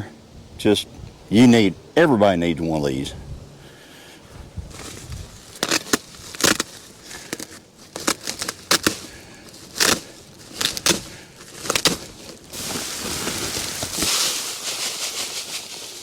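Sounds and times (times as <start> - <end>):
seed sacks rustling and crinkling: 4.2 - 16.0
grass seed pouring: 4.7 - 8.7, 11.6 - 16.0.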